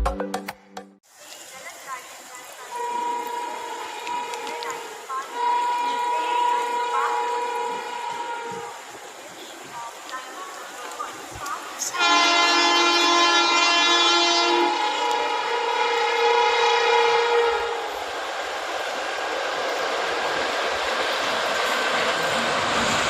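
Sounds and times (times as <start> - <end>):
train passing rush and clatter: 1.1 - 23.0
locomotive two-tone horn: 2.6 - 9.0, 11.9 - 18.1.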